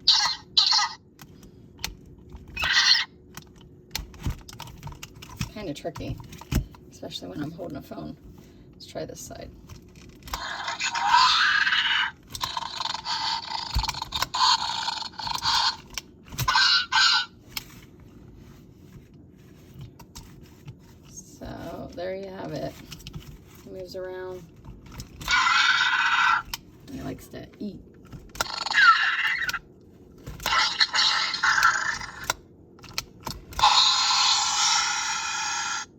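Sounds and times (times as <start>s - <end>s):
toy speaker screeches and growls: 0.0s - 1.0s, 2.5s - 3.2s, 10.3s - 17.6s, 25.2s - 27.1s, 28.4s - 29.6s, 30.4s - 32.4s, 33.6s - 35.9s
plastic clicks of toy parts: 12.2s - 16.5s, 31.6s - 33.8s.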